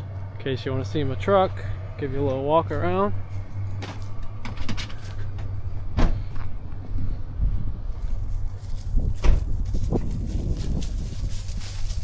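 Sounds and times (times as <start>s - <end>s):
low rumble: 0.0s - 12.0s
footsteps: 3.2s - 12.0s.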